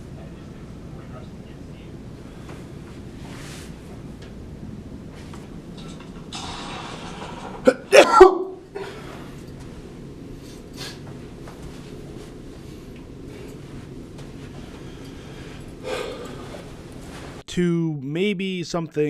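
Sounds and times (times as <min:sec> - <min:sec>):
man sneezing: 0:07.6 - 0:09.0
drawn-in breath: 0:14.6 - 0:16.6.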